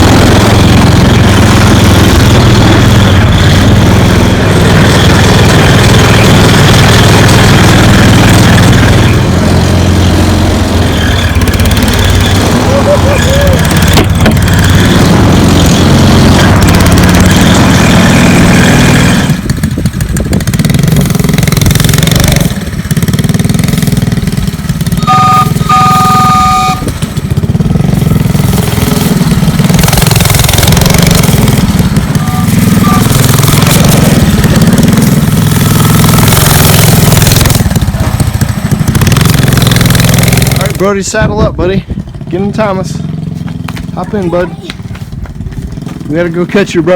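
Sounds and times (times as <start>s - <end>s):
small engine revving: 0.0s - 41.0s
two-tone horn toot: 24.9s - 27.0s, 32.0s - 34.1s.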